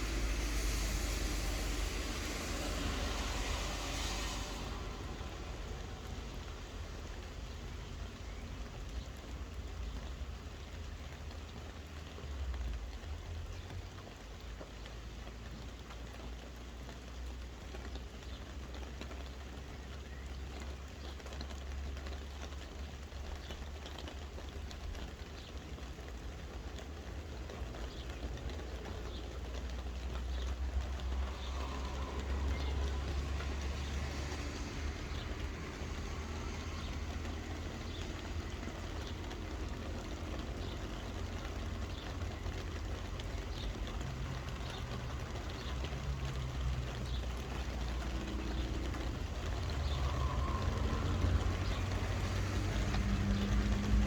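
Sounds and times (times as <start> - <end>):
low rumble: 0.0 - 7.1, 30.6 - 39.4
soft rain pattering: 0.0 - 54.0.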